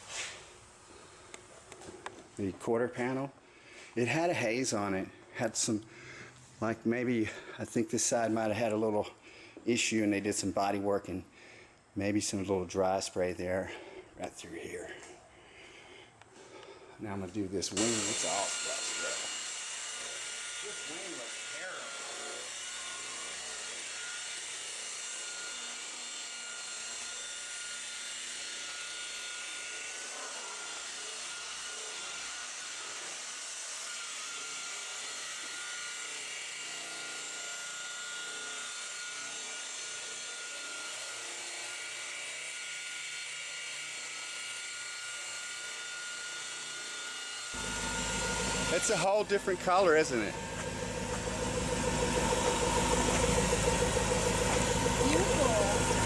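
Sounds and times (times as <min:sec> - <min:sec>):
electric polisher motor whine: 0:17.7 - 0:56.0.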